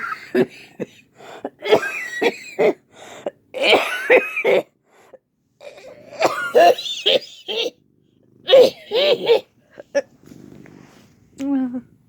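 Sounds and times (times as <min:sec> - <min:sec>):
person coughing: 0:00.0 - 0:02.8, 0:03.6 - 0:04.7, 0:05.6 - 0:07.7, 0:08.5 - 0:09.5
person clearing throat: 0:03.6 - 0:04.7, 0:05.6 - 0:07.7, 0:08.5 - 0:09.5.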